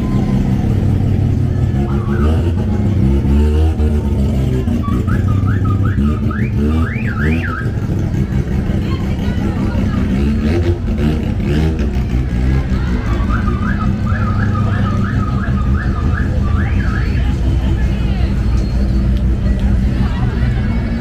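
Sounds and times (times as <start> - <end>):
car engines revving: 0.0 - 21.0
car alarm whooping: 1.8 - 2.5, 4.6 - 7.8, 12.9 - 17.6.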